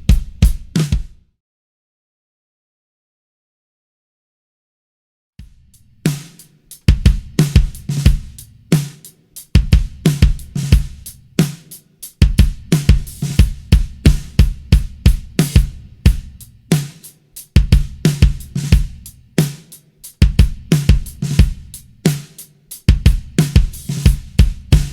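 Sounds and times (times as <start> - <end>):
bass drum thumps: 0.0 - 1.2, 6.9 - 8.4, 9.6 - 11.1, 12.2 - 16.5, 17.6 - 19.1, 20.2 - 21.8, 22.9 - 24.9
drum kit playing a groove: 0.0 - 1.2, 5.5 - 24.9.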